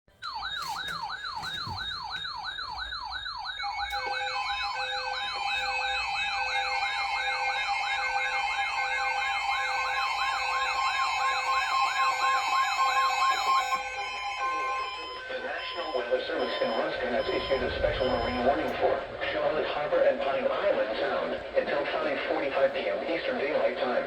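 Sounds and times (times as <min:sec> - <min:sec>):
electronic siren sweeping: 0:00.2 - 0:21.2
pulsing beeps: 0:12.9 - 0:19.9
steady tones: 0:13.8 - 0:23.5.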